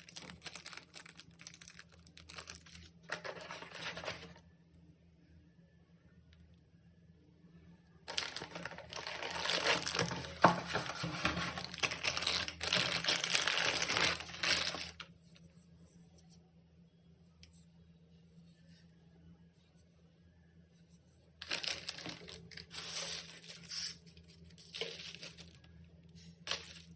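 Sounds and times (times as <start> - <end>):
packaging crinkling: 0.0 - 4.4, 8.1 - 15.1, 21.4 - 25.7.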